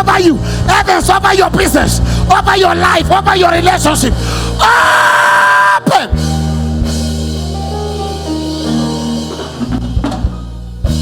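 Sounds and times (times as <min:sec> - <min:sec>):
held low chords: 0:00.0 - 0:04.6, 0:06.1 - 0:11.0
drum hits: 0:06.3 - 0:11.0.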